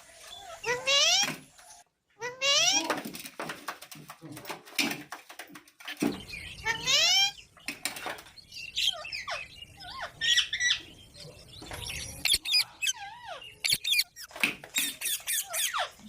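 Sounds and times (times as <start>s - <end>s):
parrot squawking: 0.2s - 1.3s, 2.2s - 2.9s, 6.6s - 7.4s, 8.8s - 10.9s, 12.0s - 16.0s.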